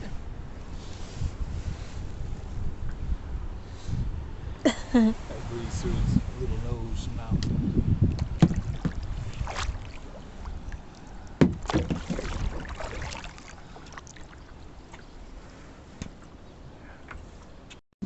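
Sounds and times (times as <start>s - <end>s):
wind rumble on microphone: 0.0s - 17.7s
paddle splashing in water: 8.1s - 16.2s
sharp knock: 11.4s - 12.0s.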